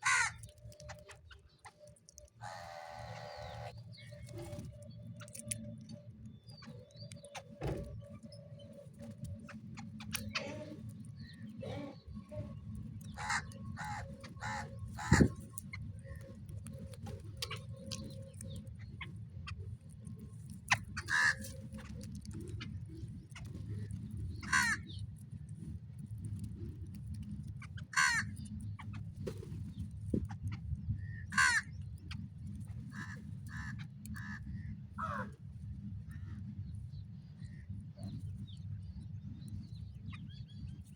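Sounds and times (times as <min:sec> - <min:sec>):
crows cawing: 0:00.0 - 0:01.0, 0:02.4 - 0:03.7, 0:13.0 - 0:15.5, 0:21.0 - 0:21.6, 0:24.4 - 0:24.9, 0:27.9 - 0:28.4, 0:31.1 - 0:31.8, 0:32.9 - 0:35.4
steady low rumble: 0:00.0 - 0:40.9.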